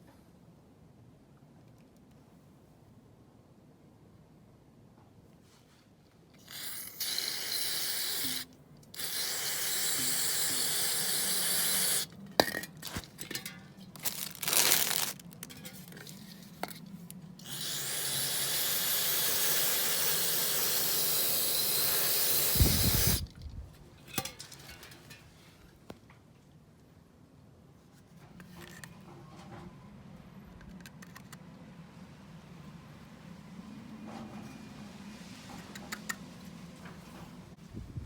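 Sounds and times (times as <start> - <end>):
steady hissing bursts: 6.4 - 12.1, 17.4 - 23.3.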